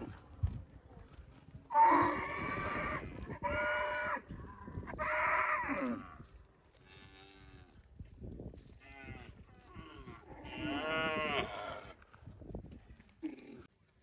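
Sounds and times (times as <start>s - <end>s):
cows mooing: 1.7s - 4.2s, 8.8s - 11.9s.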